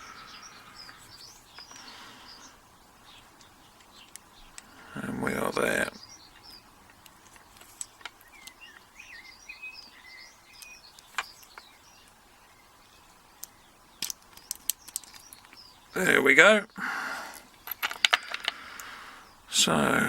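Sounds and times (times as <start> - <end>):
birds chirping faintly: 0.0 - 20.0
small metal lock parts clicking: 13.4 - 15.6, 17.6 - 18.6.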